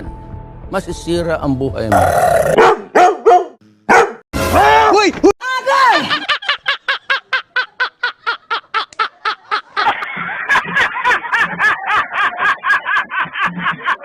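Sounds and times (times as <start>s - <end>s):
rapid laughter: 5.9s - 14.0s.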